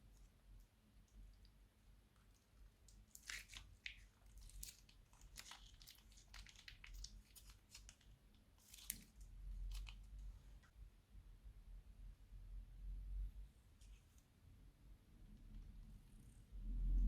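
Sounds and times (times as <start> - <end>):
slime crackling when squeezed: 3.1 - 8.0.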